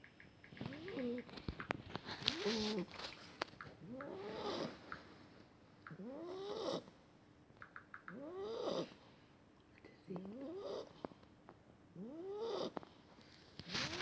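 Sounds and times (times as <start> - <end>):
puppy snoring: 0.7 - 1.3, 2.2 - 2.9, 3.8 - 4.8, 5.9 - 6.9, 8.1 - 9.0, 10.1 - 11.0, 12.0 - 12.8.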